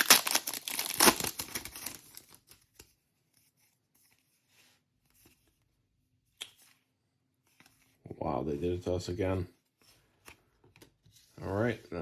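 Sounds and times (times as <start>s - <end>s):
foil wrapper crinkling and tearing: 0.0s - 2.5s.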